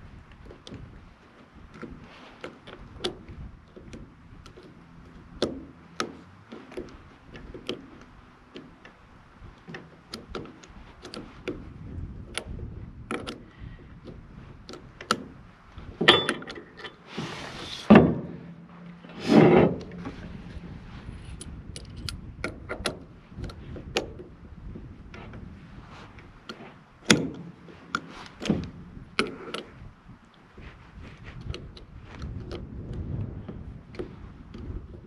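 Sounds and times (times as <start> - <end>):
metal tools clicking and clanking: 16.0 - 17.1.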